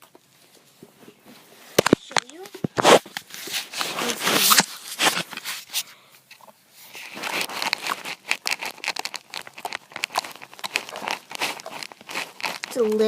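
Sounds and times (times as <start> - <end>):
slime squished by hand crackling: 7.4 - 13.0.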